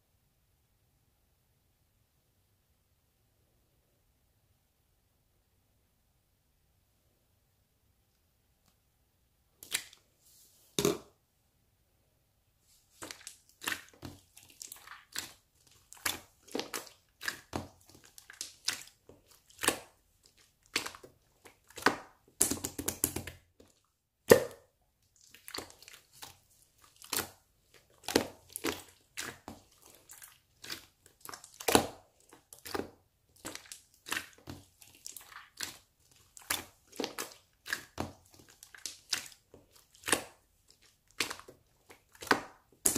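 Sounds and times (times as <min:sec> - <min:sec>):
slime squished by hand: 0:09.6 - 0:10.0, 0:12.9 - 0:42.9.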